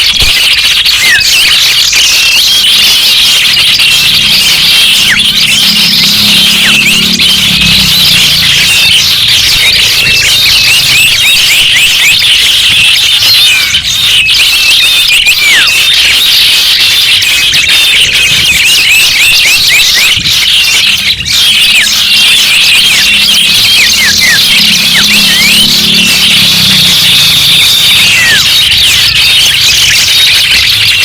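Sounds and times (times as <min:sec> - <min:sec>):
songbirds chirping and twittering: 0:00.0 - 0:31.0.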